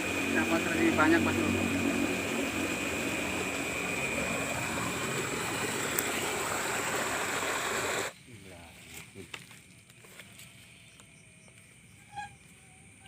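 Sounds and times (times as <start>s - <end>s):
water rushing in a ditch: 0.0s - 8.1s.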